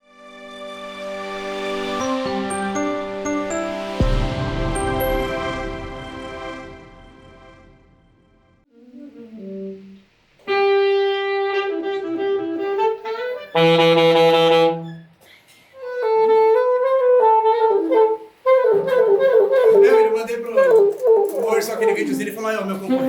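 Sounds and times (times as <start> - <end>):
saxophone and wind instruments playing: 8.7 - 15.2, 15.8 - 23.0.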